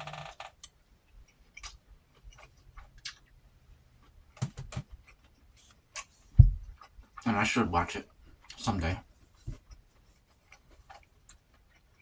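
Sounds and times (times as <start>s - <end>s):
chewing mouth clicks: 1.3s - 3.4s.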